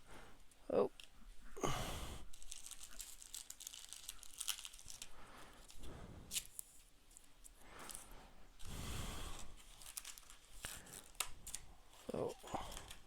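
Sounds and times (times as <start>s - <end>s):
wrapper crinkling and tearing: 2.2s - 8.1s, 9.3s - 13.0s
cards rustling: 2.3s - 8.1s, 9.3s - 13.0s.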